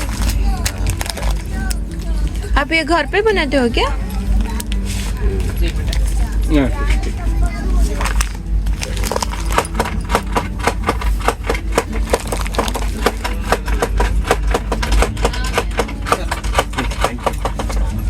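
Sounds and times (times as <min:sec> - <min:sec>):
train low rumble: 0:00.0 - 0:18.0
train wheels clacking on rails: 0:09.1 - 0:18.0.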